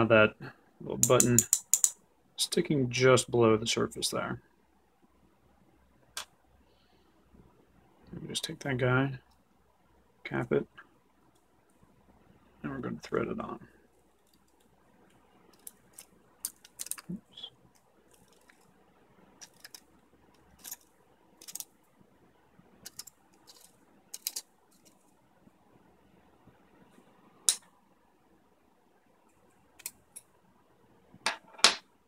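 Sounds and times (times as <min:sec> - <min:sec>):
plastic parts clicking: 0:15.5 - 0:17.2, 0:19.4 - 0:19.8, 0:21.4 - 0:21.7, 0:22.8 - 0:25.0.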